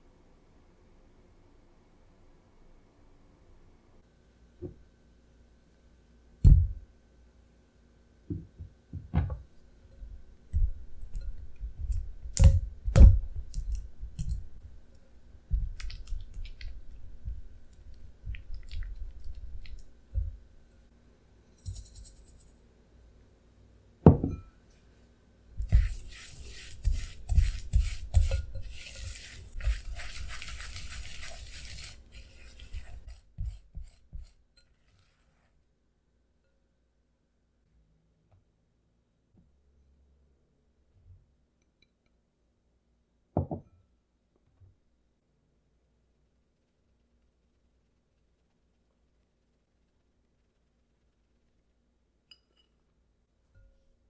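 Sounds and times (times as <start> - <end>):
scraping in a bowl: 21.6 - 22.6, 25.6 - 35.5.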